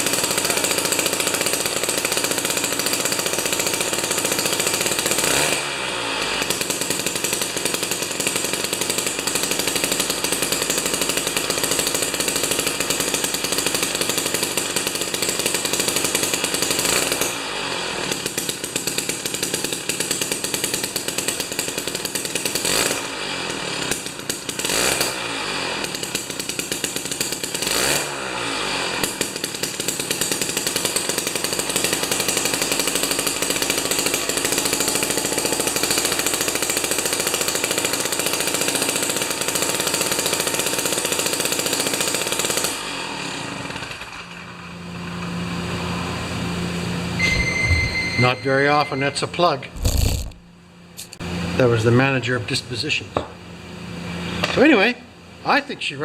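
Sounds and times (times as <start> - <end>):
two-stroke engine revving: 0.0 - 43.8.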